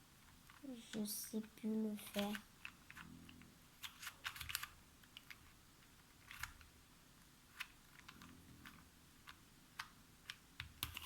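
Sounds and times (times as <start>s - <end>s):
puzzle cube clicking: 2.0s - 6.7s, 7.5s - 11.0s.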